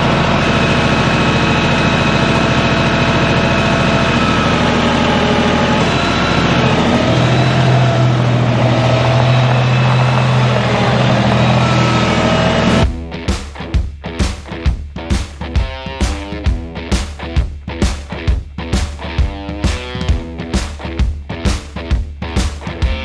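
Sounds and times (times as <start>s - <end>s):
heavy engine running: 0.0s - 12.9s
strong low hum: 0.0s - 13.2s.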